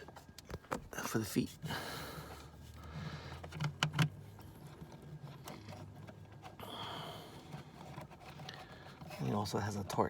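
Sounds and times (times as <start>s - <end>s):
plastic parts clicking and knocking: 2.9s - 6.6s.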